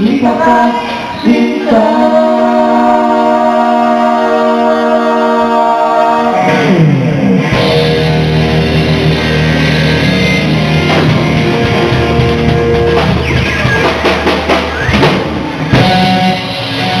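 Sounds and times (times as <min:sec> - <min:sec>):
bass guitar: 0:00.0 - 0:17.0
electric guitar: 0:00.0 - 0:17.0
drum kit: 0:06.4 - 0:17.0.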